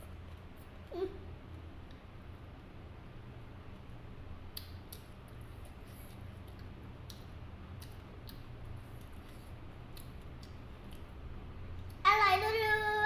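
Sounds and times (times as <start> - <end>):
steady low hum: 0.0 - 13.0
eating clicks and utensil noises: 4.5 - 11.2.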